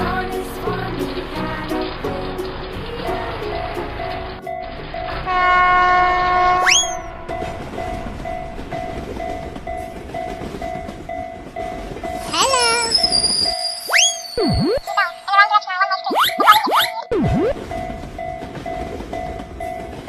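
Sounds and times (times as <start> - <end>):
rumble of passing train: 0.0 - 13.9, 17.6 - 20.0
railroad crossing bell ringing: 3.2 - 5.6, 6.8 - 15.3
train horn: 5.2 - 7.4
rising whistle-like glides: 6.6 - 7.1, 12.9 - 14.8.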